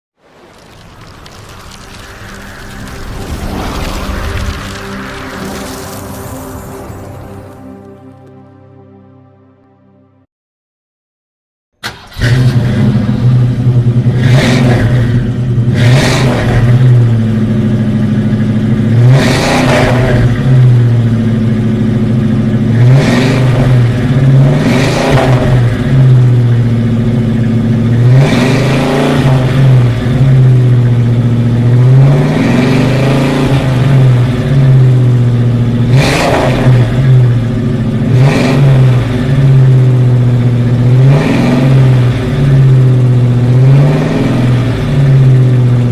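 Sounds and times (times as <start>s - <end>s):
car engine idling and revving: 0.6s - 8.0s, 11.8s - 45.9s.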